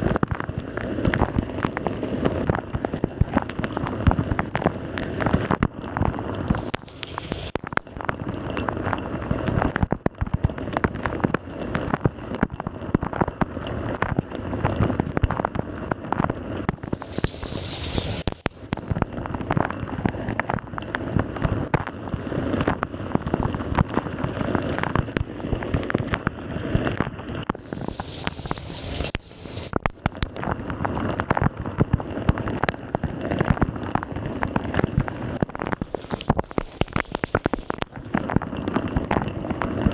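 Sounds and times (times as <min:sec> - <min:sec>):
bright hiss: 0:06.6 - 0:08.0, 0:16.8 - 0:18.8, 0:27.6 - 0:30.2, 0:35.6 - 0:38.0.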